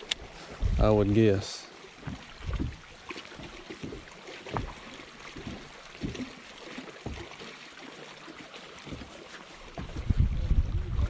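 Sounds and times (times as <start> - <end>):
hiss of wind and water: 0.0 - 11.0
water lapping at a hull: 0.0 - 11.0
knocks against a boat: 2.0 - 2.8, 3.8 - 4.8, 5.4 - 6.4, 7.0 - 7.3.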